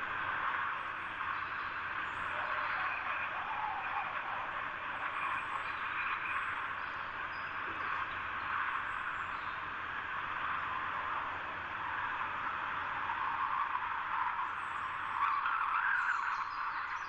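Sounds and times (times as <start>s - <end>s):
faint high bird chirps: 14.5s - 17.0s.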